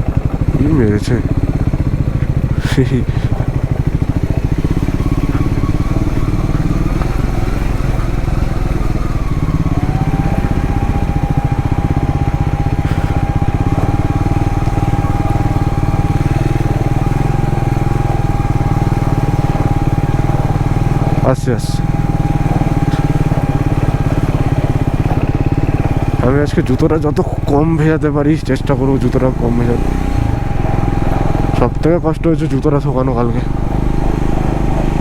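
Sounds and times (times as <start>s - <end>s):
motorcycle engine running: 0.0s - 35.0s
thin steady whine: 0.0s - 35.0s.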